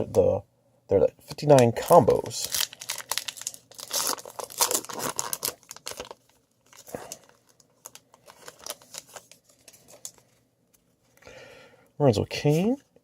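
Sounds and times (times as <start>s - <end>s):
wrapper crinkling and tearing: 1.4s - 10.3s.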